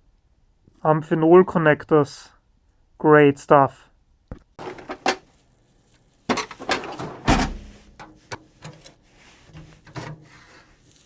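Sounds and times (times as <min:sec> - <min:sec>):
metal chassis knocks and scrapes: 0:04.6 - 0:05.3, 0:06.3 - 0:10.7.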